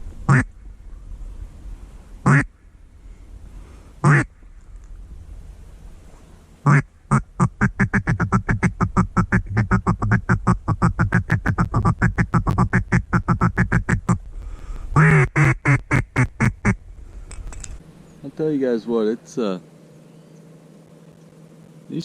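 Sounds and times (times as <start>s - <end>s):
duck quacking: 0.3s - 0.5s, 2.2s - 2.5s, 4.0s - 4.3s, 6.6s - 14.2s, 15.0s - 16.8s.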